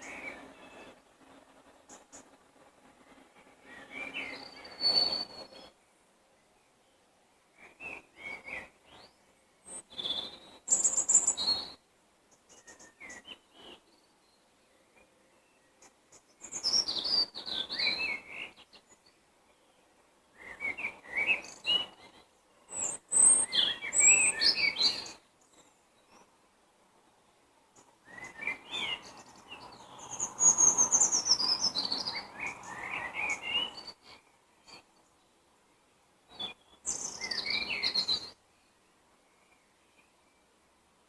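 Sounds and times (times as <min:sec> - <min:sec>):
songbirds chirping: 0:00.0 - 0:41.0.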